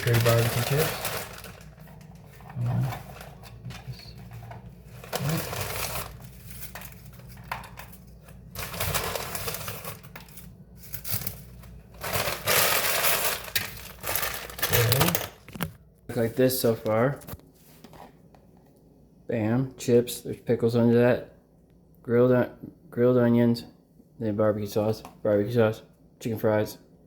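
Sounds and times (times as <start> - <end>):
chip bag crinkling: 0.0 - 15.8.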